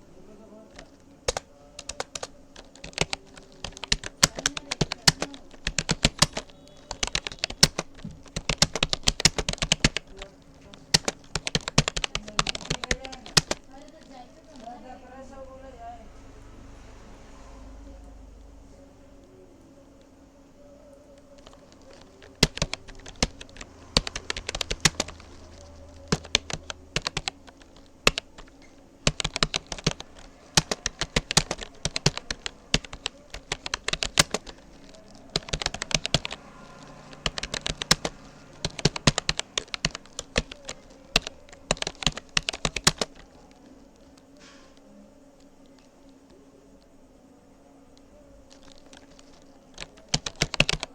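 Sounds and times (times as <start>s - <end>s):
keyboard key clicks: 0.8s - 10.2s, 10.9s - 13.7s, 21.4s - 28.5s, 29.1s - 43.2s, 48.5s - 50.9s.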